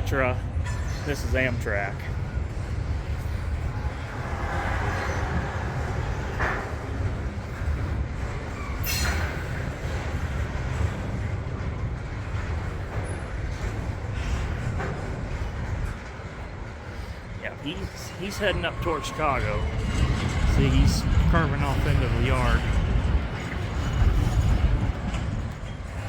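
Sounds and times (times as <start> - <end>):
freight train rumbling past: 0.0 - 26.0.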